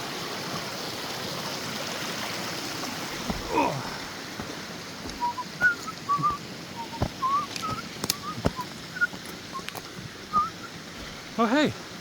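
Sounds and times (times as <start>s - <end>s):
person whistling a tune: 5.2s - 9.7s, 10.3s - 10.7s.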